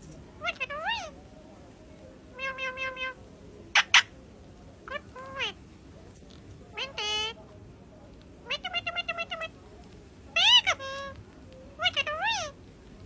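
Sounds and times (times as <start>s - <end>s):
parrot shrieking: 0.4s - 1.2s, 2.3s - 4.1s, 6.7s - 7.4s, 8.4s - 9.5s, 10.3s - 11.2s, 11.8s - 12.6s
parrot mimicking cat meow: 2.3s - 3.2s, 8.4s - 9.5s, 11.8s - 12.6s.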